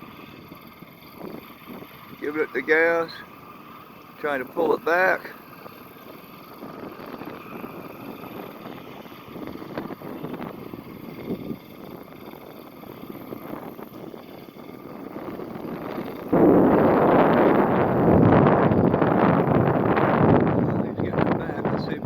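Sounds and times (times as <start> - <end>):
distant boat engine running: 0.0 - 22.0
wind buffeting microphone: 5.8 - 22.0.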